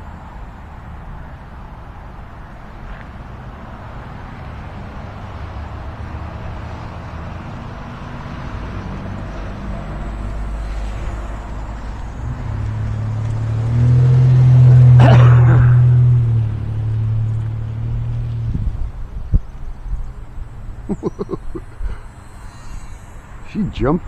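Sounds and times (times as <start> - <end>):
gusty wind buffeting microphone: 0.0 - 24.0.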